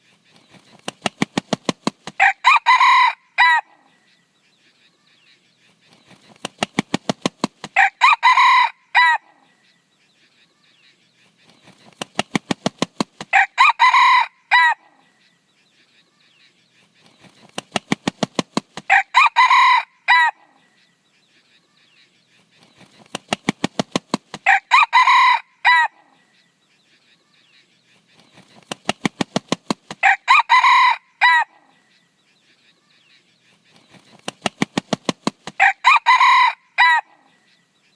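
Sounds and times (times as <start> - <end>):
rooster crowing: 2.2 - 3.7, 7.8 - 9.3, 13.3 - 14.9, 18.9 - 20.4, 24.4 - 26.0, 30.0 - 31.6, 35.6 - 37.2
wing claps: 28.6 - 30.0.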